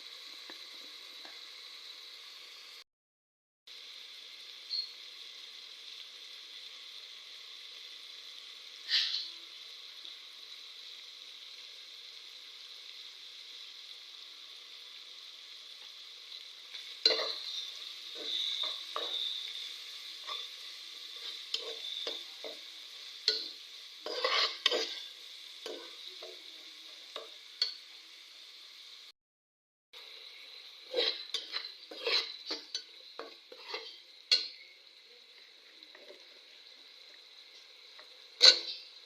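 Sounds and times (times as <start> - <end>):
food sizzling in a pan: 0.0 - 2.9, 3.7 - 29.2, 30.0 - 39.0
spoon scraping and knocking pan: 16.7 - 26.5, 27.1 - 27.8, 30.8 - 34.6, 37.5 - 39.0.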